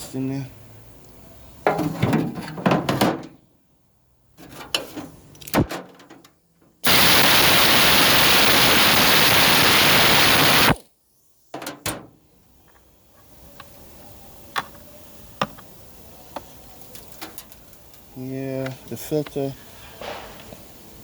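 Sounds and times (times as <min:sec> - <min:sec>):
loud steady hiss: 0:06.7 - 0:21.0.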